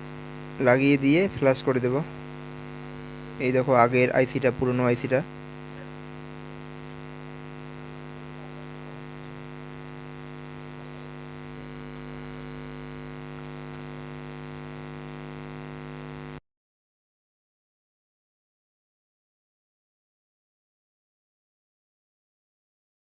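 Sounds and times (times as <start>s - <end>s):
electrical hum: 0.0s - 16.4s.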